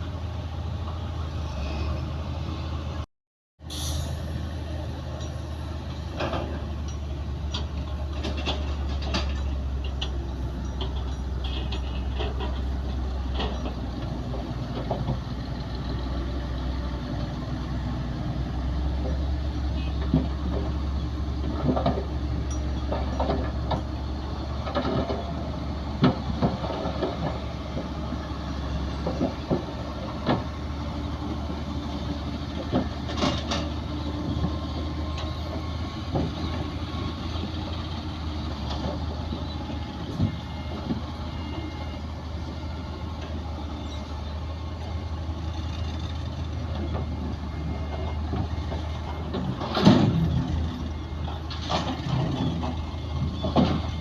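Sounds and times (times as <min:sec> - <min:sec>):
heavy diesel machinery running: 0:00.0 - 0:54.0
metal clanks and knocks: 0:05.2 - 0:15.4, 0:20.0 - 0:28.1, 0:28.9 - 0:30.6, 0:32.5 - 0:36.8, 0:46.7 - 0:54.0.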